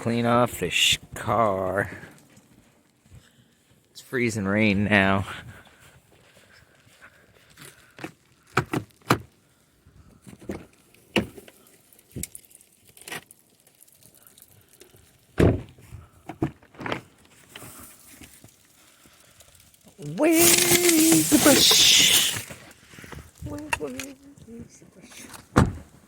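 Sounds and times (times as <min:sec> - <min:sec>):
ice scraped off car: 0:20.0 - 0:22.7.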